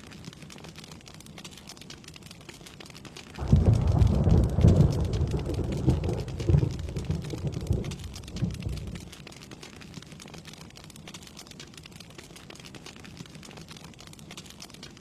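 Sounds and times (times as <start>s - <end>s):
steady rain falling: 0.0s - 15.0s
thunder rumbling: 3.4s - 9.1s.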